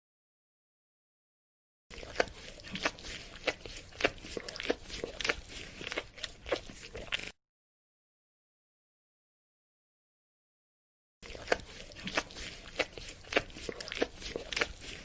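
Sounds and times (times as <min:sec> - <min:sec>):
dog licking: 0:01.9 - 0:07.4, 0:11.2 - 0:15.0.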